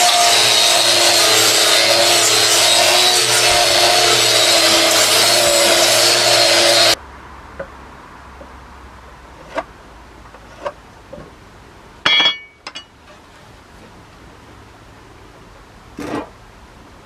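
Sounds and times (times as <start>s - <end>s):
power tool running against wood: 0.0s - 7.0s.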